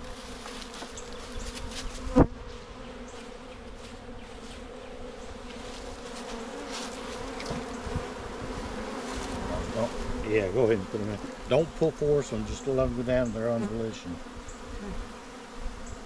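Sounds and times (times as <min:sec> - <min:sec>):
bees buzzing: 0:00.0 - 0:16.0.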